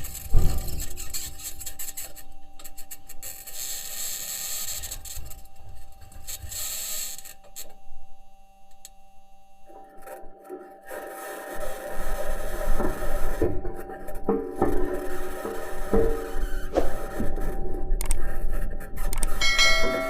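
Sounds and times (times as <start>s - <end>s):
rover wheels scraping and grinding: 10.9s - 20.0s
steady tones: 19.2s - 20.0s.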